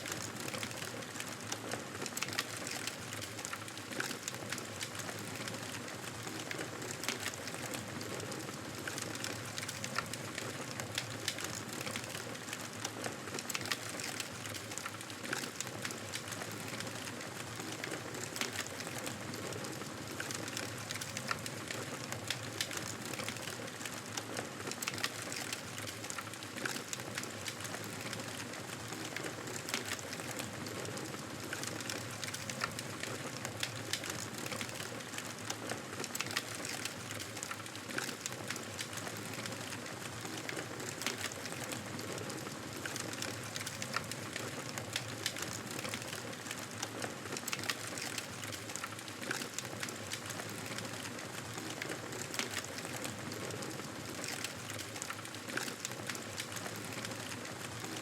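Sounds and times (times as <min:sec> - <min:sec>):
wood fire crackling and popping: 0:00.0 - 0:58.0.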